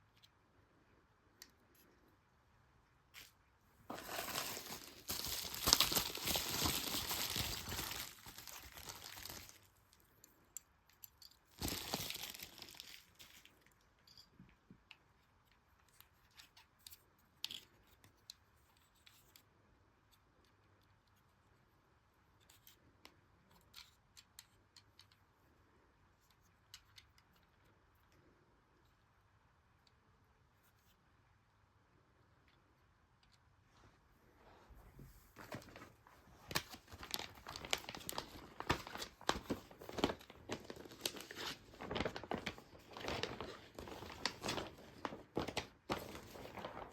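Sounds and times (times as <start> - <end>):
packaging tearing and crinkling: 3.9 - 9.7, 11.6 - 13.2, 36.5 - 46.9.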